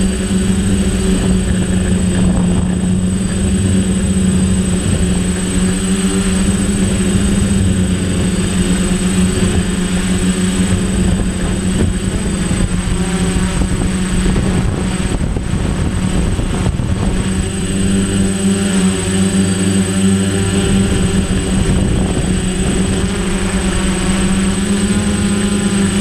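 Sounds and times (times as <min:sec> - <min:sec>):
drone motors humming: 0:00.0 - 0:26.0
wind rumbling on microphone: 0:00.0 - 0:26.0.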